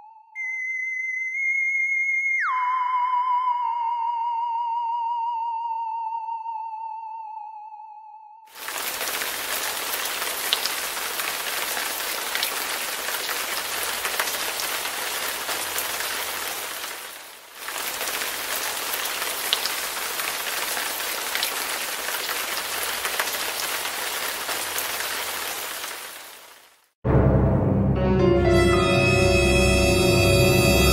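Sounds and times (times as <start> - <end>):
steady rain falling: 8.5 - 27.0.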